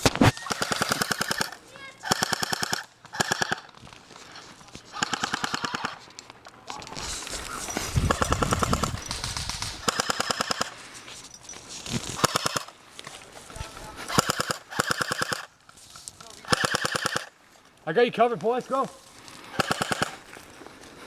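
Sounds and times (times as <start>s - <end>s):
airsoft rifle bursts: 0.0s - 6.2s, 7.5s - 11.0s, 12.1s - 12.7s, 14.0s - 15.5s, 16.2s - 17.3s, 19.4s - 20.3s
handling or rustling noise: 6.0s - 9.9s, 10.8s - 12.2s.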